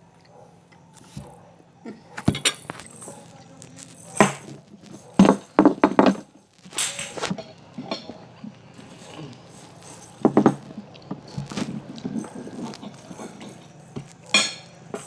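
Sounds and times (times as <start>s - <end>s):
irregular knocks and clinks: 4.1s - 6.4s, 9.7s - 15.0s.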